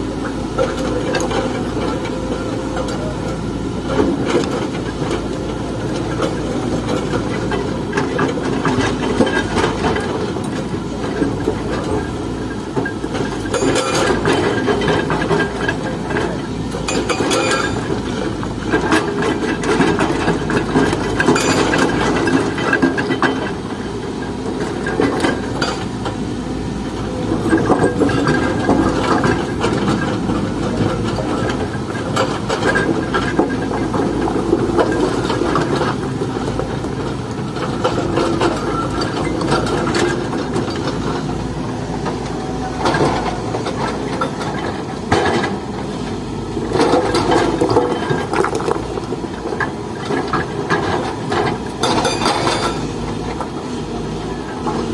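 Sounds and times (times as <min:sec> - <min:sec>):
excavator engine running: 0:00.0 - 0:54.9
rattling and clattering: 0:46.7 - 0:52.8.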